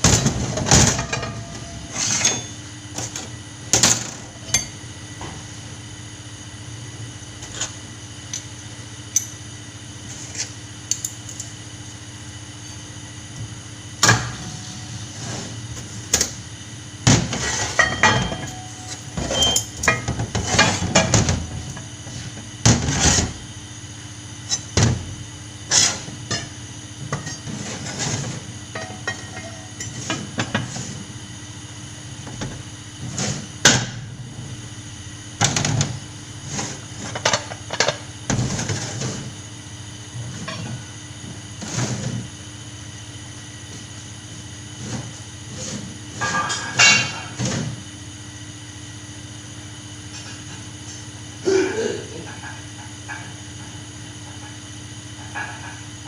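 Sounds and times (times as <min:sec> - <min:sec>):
steady machine hum: 0:00.0 - 0:56.0
metal tools clanking: 0:00.9 - 0:03.2, 0:17.7 - 0:20.8.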